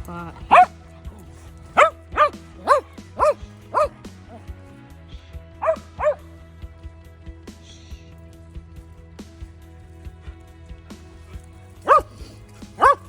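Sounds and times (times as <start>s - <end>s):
background music: 0.0s - 13.0s
dog barking: 0.3s - 4.4s, 5.6s - 6.2s, 11.8s - 13.0s.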